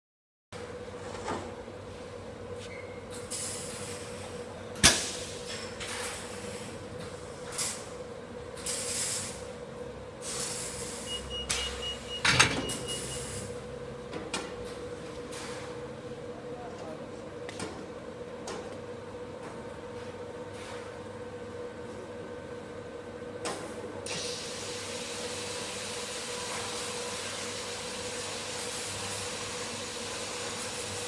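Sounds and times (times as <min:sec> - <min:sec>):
welding machine hum: 0:24.1 - 0:31.0.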